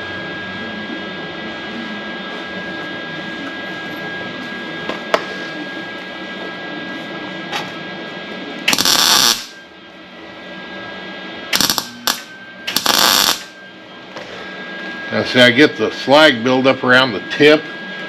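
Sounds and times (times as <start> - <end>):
steady background hum: 0.0 - 18.0
welder arc crackling: 8.7 - 9.6, 11.5 - 13.6.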